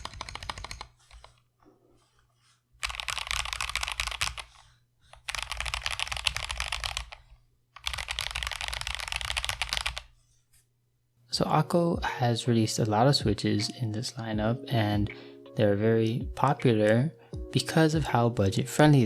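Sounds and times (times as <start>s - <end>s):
mechanical keyboard typing: 0.0s - 1.4s, 2.8s - 4.6s, 5.2s - 7.2s, 7.8s - 10.1s.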